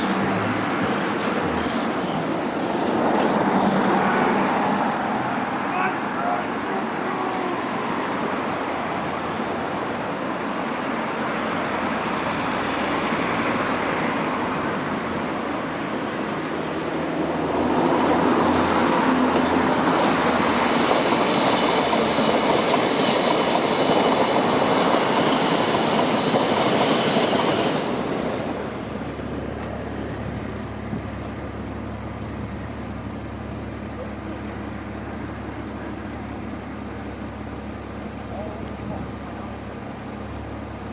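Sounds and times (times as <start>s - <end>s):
train wheels on rails: 0.0s - 5.6s, 6.6s - 40.8s.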